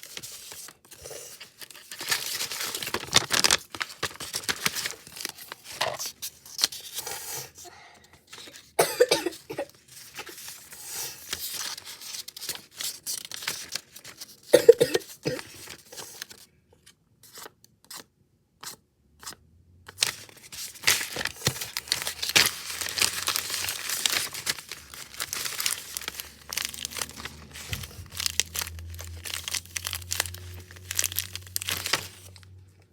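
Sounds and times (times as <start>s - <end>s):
crinkly rustling from handling: 0.0s - 7.6s, 9.6s - 16.4s, 20.0s - 32.6s
person coughing: 8.8s - 9.7s, 14.5s - 15.6s.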